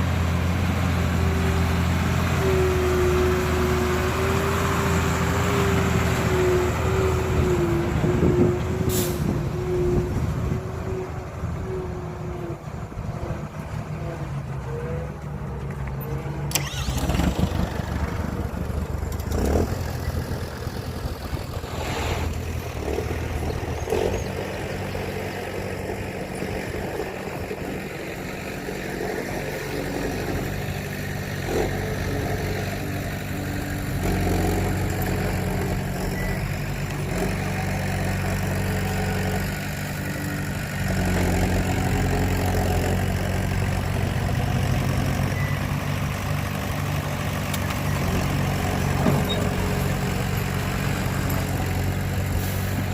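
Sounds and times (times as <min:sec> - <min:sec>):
diesel truck engine idling: 0:16.5 - 0:21.7.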